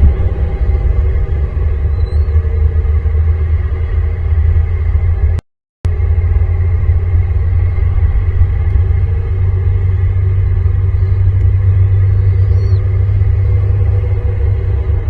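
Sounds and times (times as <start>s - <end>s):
wind buffeting microphone: 0.0s - 15.0s
faint high gliding call: 8.6s - 15.0s.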